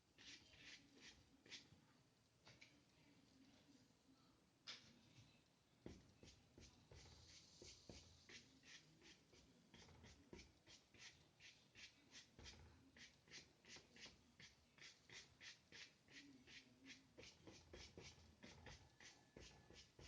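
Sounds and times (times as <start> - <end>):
paintbrush scratching on paper: 0.0 - 1.8, 5.9 - 20.0.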